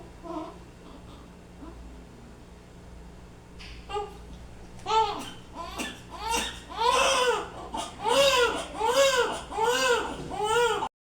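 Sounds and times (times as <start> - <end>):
newborn baby crying: 3.9 - 4.2, 4.8 - 10.9.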